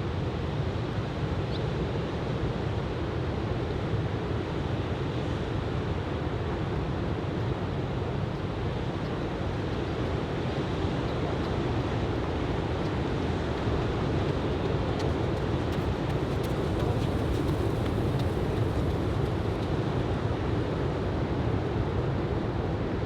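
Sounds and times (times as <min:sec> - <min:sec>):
wind on microphone: 0:12.6 - 0:19.9.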